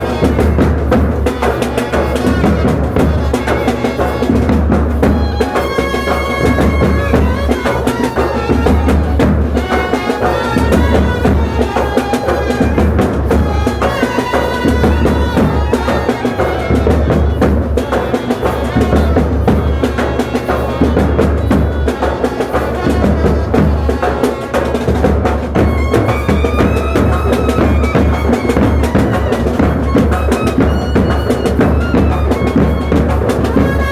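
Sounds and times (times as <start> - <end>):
loud drums: 0.0 - 33.9
wind instrument melody: 0.0 - 33.9.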